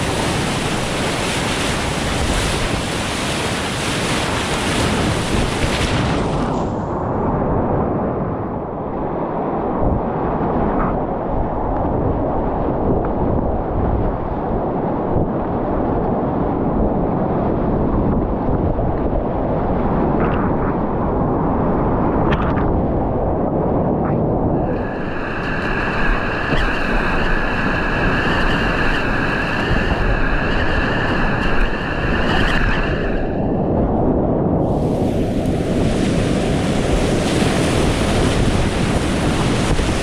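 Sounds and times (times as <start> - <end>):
high-pitched multi-tone whine: 24.6 - 33.6
whitewater rapids rushing: 34.8 - 40.0.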